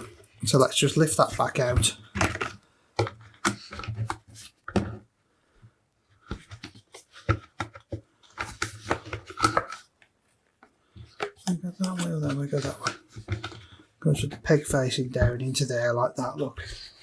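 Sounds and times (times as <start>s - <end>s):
plastic parts clicking and rattling: 0.0s - 5.0s, 6.2s - 9.9s, 11.0s - 14.8s.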